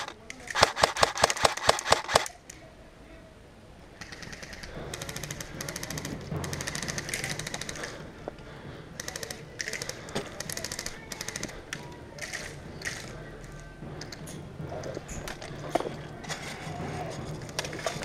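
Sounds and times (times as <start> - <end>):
airsoft guns firing full-auto: 0.0 - 2.3.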